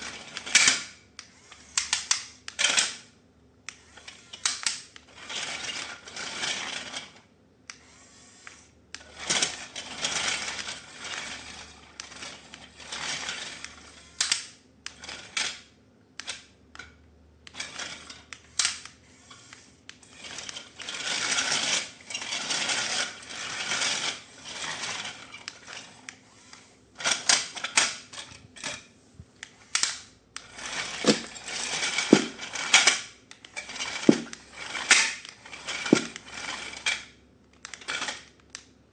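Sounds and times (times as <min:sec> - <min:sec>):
sharp plastic clicks: 0:03.7 - 0:05.1.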